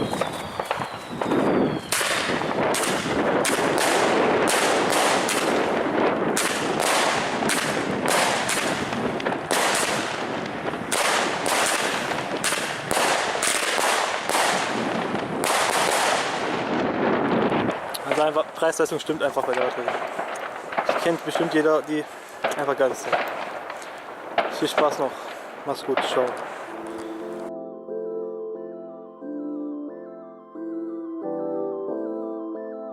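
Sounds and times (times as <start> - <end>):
fireworks shots and bangs: 0.0 - 27.5
hiss and crackle: 6.4 - 27.1.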